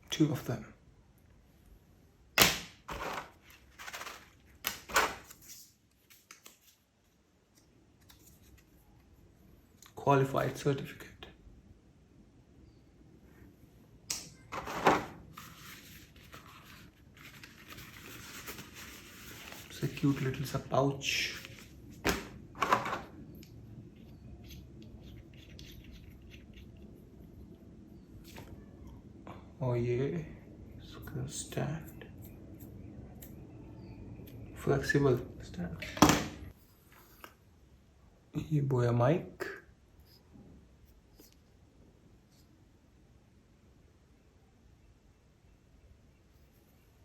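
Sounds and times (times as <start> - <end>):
packaging rustling and scraping: 2.9 - 6.8, 14.5 - 20.6.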